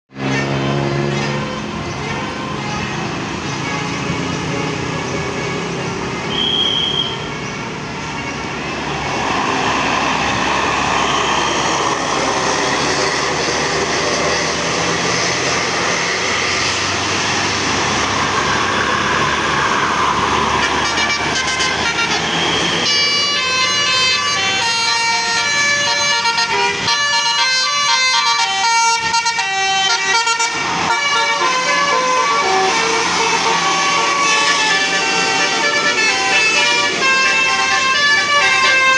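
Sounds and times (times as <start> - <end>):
multi-tone bus horn tune: 0.1 - 38.9
vehicle noise: 0.1 - 38.9.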